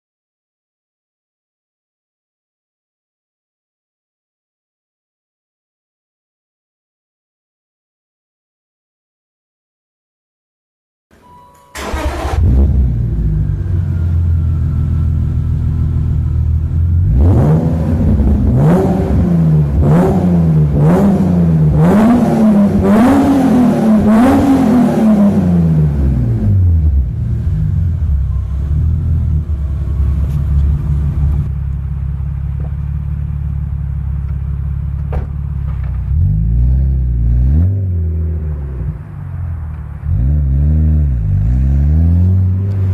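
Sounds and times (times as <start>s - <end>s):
car engine idling and revving: 11.8s - 42.9s.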